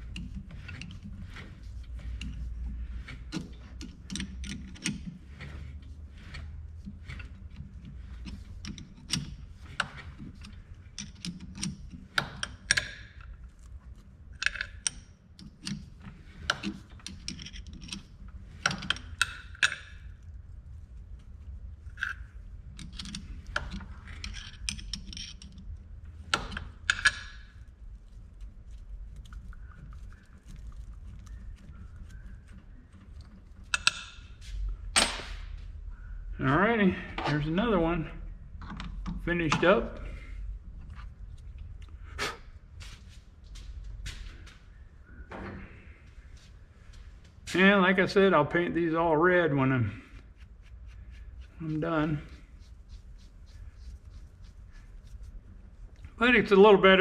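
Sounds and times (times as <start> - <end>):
low steady hum: 0.0 - 57.0
metallic clicks and clinks: 16.5 - 20.0, 22.8 - 25.7.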